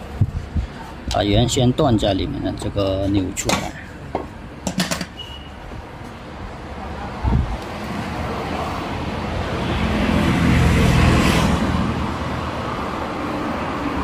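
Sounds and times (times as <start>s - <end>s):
motor vehicle rumbling past: 7.3s - 14.0s.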